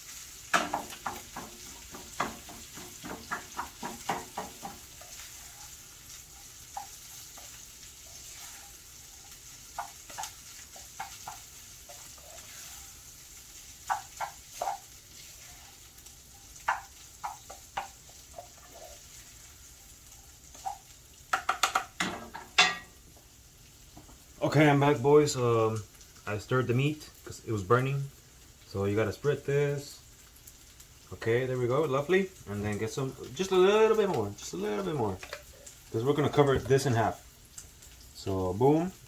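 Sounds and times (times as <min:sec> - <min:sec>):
meat sizzling in a pan: 0:00.0 - 0:39.0
utensil scraping against pan: 0:00.5 - 0:19.6.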